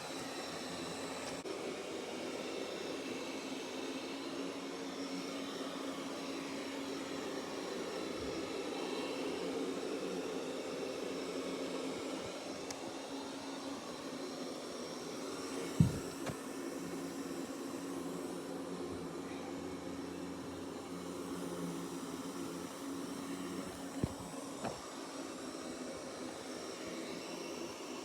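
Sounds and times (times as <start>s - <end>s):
robot vacuum whirring: 4.4s - 17.6s, 20.5s - 27.9s.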